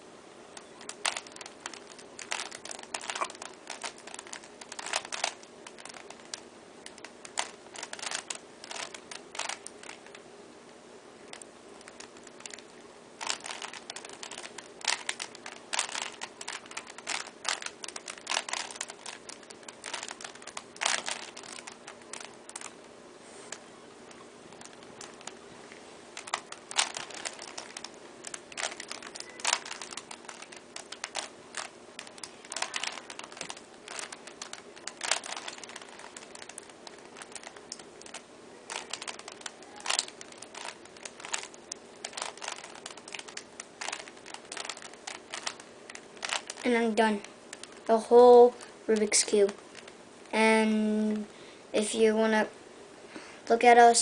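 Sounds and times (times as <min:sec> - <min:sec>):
plastic puzzle cube clicking: 0:00.6 - 0:10.2, 0:13.2 - 0:22.7, 0:26.2 - 0:47.9.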